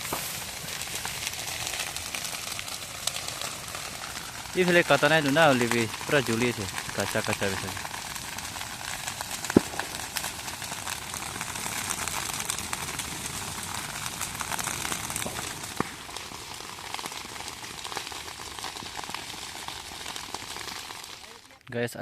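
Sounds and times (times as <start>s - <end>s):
fire crackling: 0.0s - 22.0s
sharp pop: 9.5s - 10.0s.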